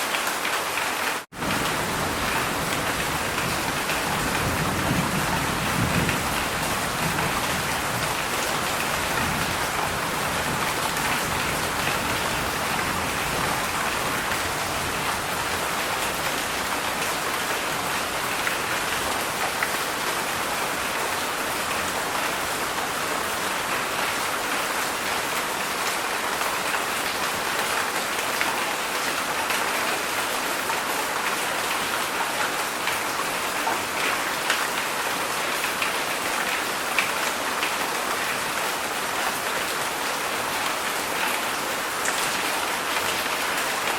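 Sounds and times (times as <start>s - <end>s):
heavy rain falling: 0.0s - 43.9s.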